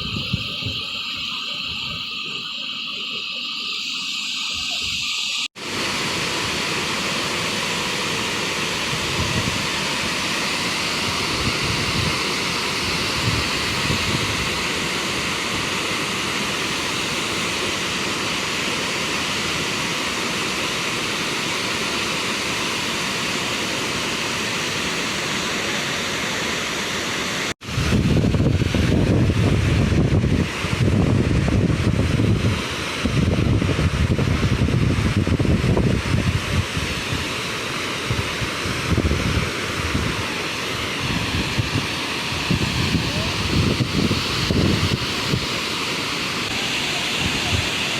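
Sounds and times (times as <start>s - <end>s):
wind on microphone: 0.0s - 3.2s, 8.7s - 15.8s, 27.6s - 47.9s
waterfall rushing: 0.0s - 47.9s.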